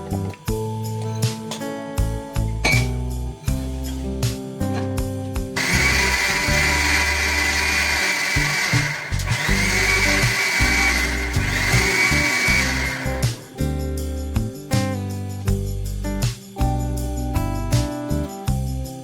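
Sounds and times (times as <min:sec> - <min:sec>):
background music: 0:00.0 - 0:19.0
grinding noise: 0:05.6 - 0:13.4
small electric motor whining: 0:05.6 - 0:13.4.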